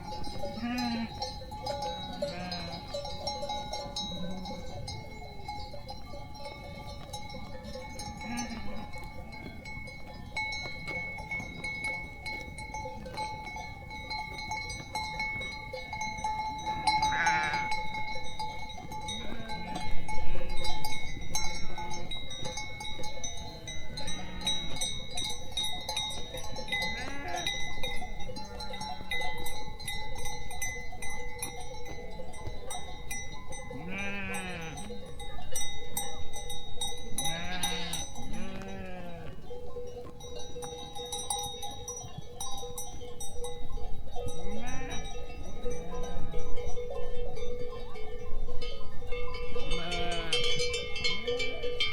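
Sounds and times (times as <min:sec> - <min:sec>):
sheep and goats bleating: 0:00.0 - 0:15.4, 0:16.0 - 0:25.2, 0:26.7 - 0:29.4, 0:33.7 - 0:35.7, 0:37.1 - 0:40.2, 0:44.4 - 0:46.7, 0:49.3 - 0:51.5.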